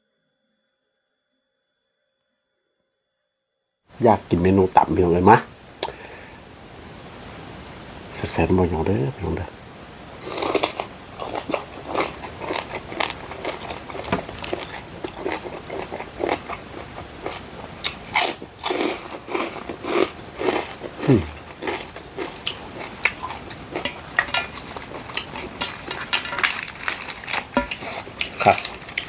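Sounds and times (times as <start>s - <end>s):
chewing and crunching: 10.2s - 29.0s.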